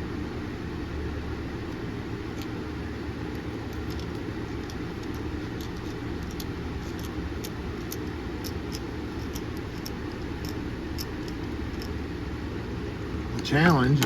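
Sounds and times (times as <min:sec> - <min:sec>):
steady low rumble: 0:00.0 - 0:14.0
small metal parts clicking: 0:03.3 - 0:12.0.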